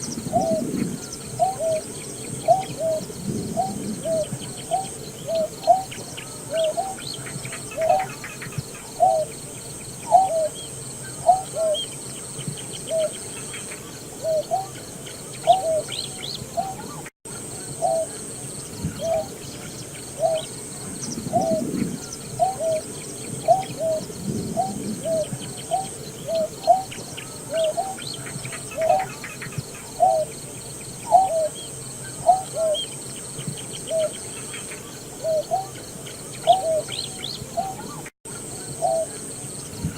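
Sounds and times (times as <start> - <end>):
bird low hooting calls: 0.0 - 39.9
faint bird chirps: 0.0 - 39.9.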